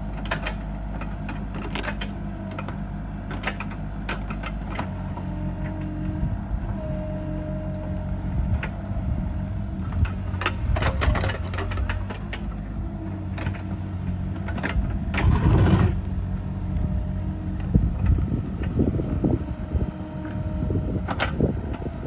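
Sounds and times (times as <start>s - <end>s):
diesel engine running: 0.0s - 22.0s
bucket scraping and grinding: 15.1s - 16.1s.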